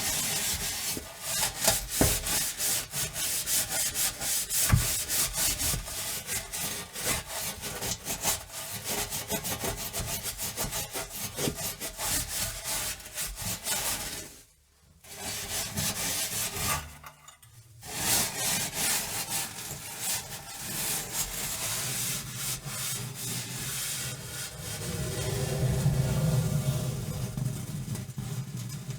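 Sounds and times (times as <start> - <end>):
scouring oven surface: 18.3 - 28.9.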